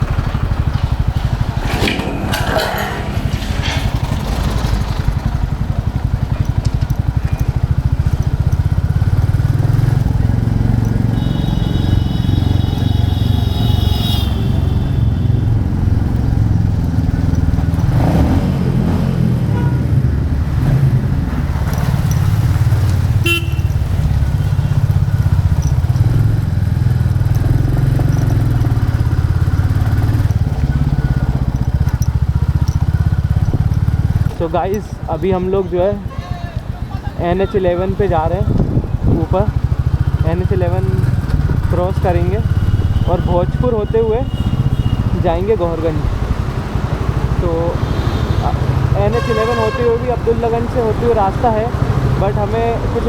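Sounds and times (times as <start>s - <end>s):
motorcycle engine thumping: 0.0s - 53.0s
vehicle horn: 11.0s - 16.0s, 19.5s - 20.0s, 23.2s - 25.4s, 42.4s - 45.4s, 47.5s - 50.4s.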